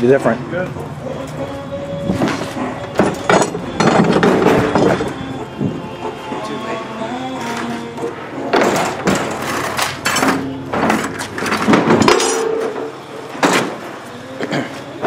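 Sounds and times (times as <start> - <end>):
scrap metal clanks and knocks: 2.1 - 13.9.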